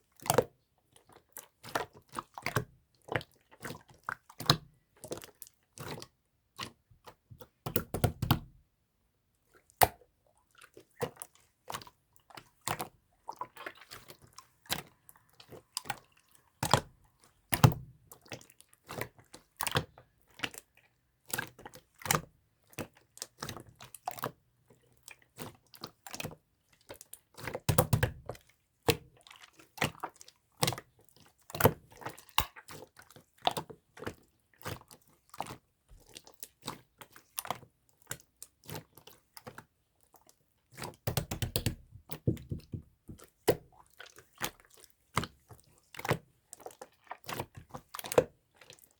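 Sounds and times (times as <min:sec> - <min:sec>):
slime clicking and popping: 0:41.1 - 0:41.9.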